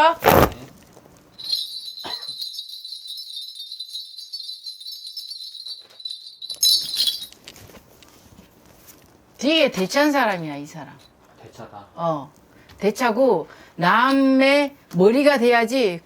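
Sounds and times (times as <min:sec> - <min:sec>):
small bells jingling: 0:01.3 - 0:07.8, 0:13.8 - 0:14.6.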